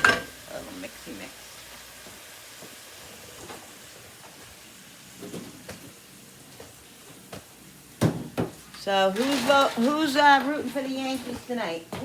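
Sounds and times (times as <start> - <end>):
meat sizzling in a pan: 0.0 - 9.1.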